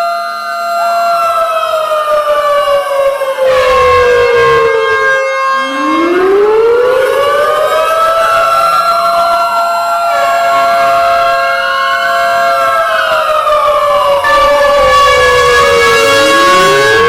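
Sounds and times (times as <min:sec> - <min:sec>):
tornado warning siren winding: 0:03.4 - 0:17.0.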